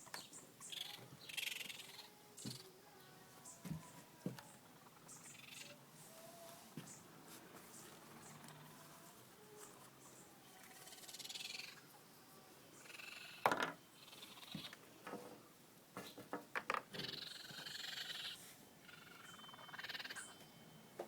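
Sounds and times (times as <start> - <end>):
baby raccoons chittering: 0.0 - 6.0, 9.6 - 12.0, 12.7 - 14.8, 16.8 - 20.4.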